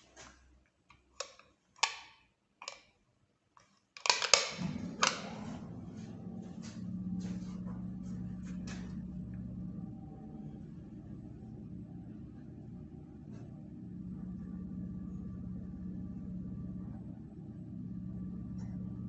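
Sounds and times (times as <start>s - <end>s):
lift clicks: 4.0s - 9.7s
lift starting clacks: 4.3s - 17.3s
lift motor humming: 4.5s - 19.0s.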